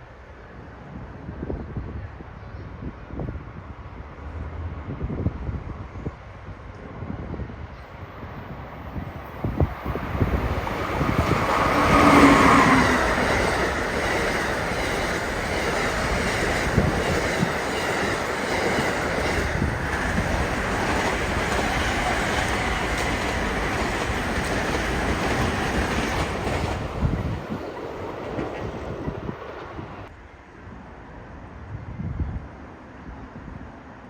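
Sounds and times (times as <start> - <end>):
electric train passing: 7.6 - 30.4
wheels clicking over rail joints: 9.6 - 29.6.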